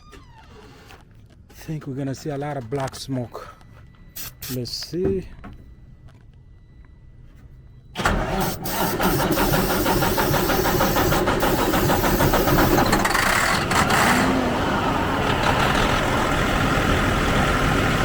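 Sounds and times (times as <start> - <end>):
diesel truck engine starting: 8.0 - 18.0.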